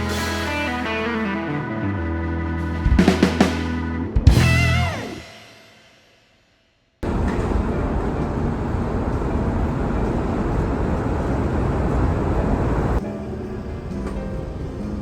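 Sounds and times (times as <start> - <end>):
low outdoor rumble: 7.0 - 15.0.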